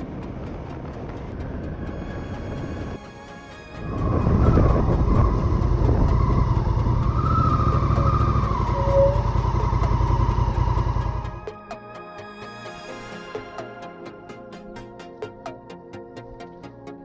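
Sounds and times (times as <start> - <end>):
motorcycle engine running: 0.0 - 1.8, 4.0 - 11.5.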